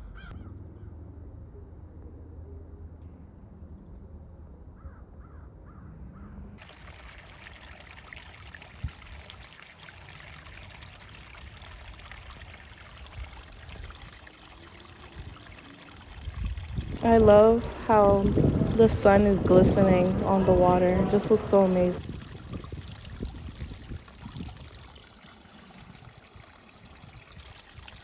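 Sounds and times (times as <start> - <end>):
stream water trickling: 6.6 - 28.0.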